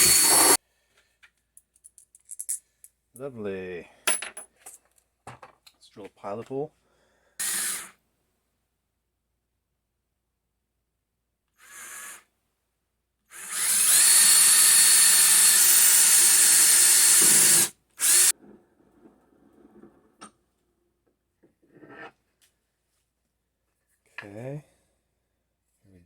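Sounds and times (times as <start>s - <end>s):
power drill boring into wood: 0.0s - 0.6s, 7.4s - 7.9s, 13.3s - 18.3s.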